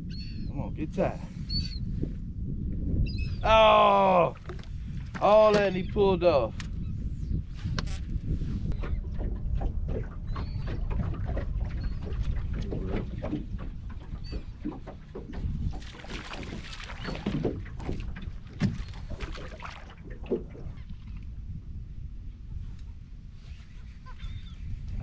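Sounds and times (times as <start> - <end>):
low rumble: 0.0 - 15.8.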